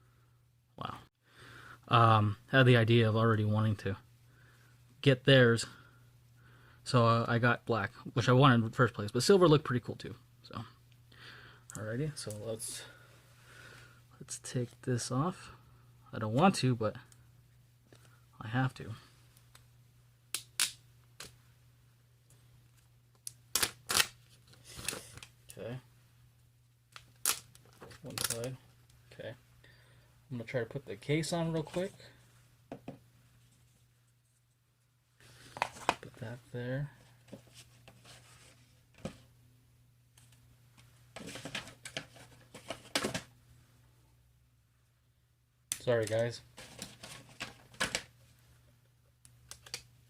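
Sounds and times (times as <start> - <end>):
faint steady hum: 0.0 - 50.0
plastic film clicks and crackles: 26.9 - 28.6, 49.5 - 49.9.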